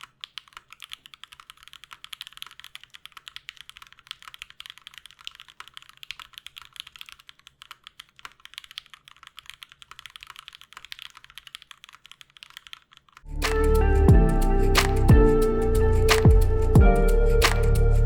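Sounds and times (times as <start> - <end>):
mechanical keyboard typing: 0.0 - 13.8.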